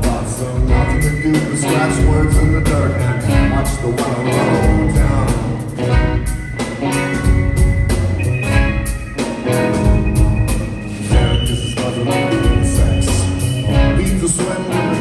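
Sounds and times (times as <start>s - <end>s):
drum beat: 0.0s - 14.8s
heavy bass line: 0.0s - 15.0s.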